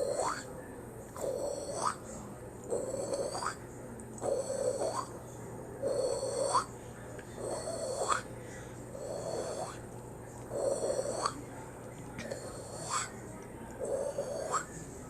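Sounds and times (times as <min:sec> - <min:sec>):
cartoon snoring with whistle: 0:01.2 - 0:02.0, 0:04.3 - 0:05.1, 0:05.8 - 0:06.7, 0:07.4 - 0:08.3, 0:09.0 - 0:09.8, 0:13.9 - 0:14.7.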